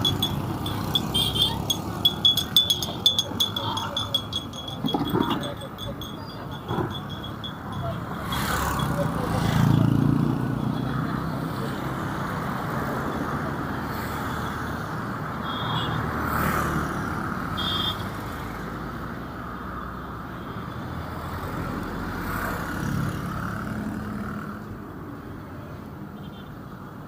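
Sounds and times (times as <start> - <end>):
short high beeps: 0.0 - 9.1
vehicle engines running: 0.0 - 14.4
cars passing: 0.0 - 27.0.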